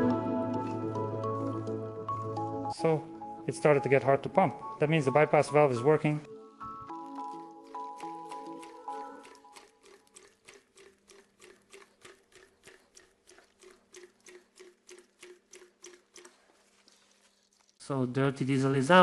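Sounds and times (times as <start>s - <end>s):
hand pump strokes: 6.9s - 17.8s.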